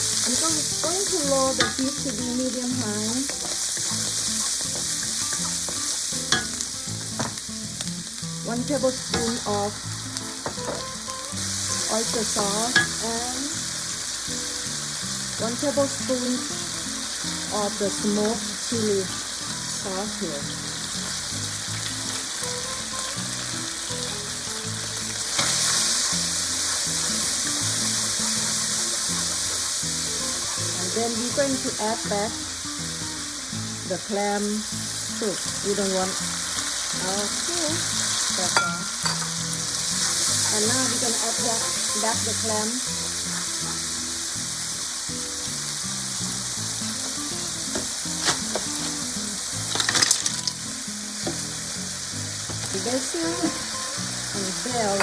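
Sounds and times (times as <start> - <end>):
quiet background music: 0.0 - 55.0
sauce sizzling in a hot pan: 0.0 - 55.0
shells clattering against pan: 49.7 - 50.6.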